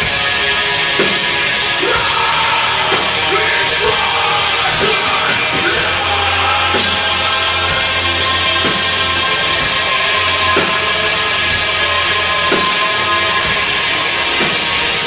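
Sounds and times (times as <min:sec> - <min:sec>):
heavy rock band playing: 0:00.0 - 0:15.0
person yelling vocals: 0:01.8 - 0:07.2.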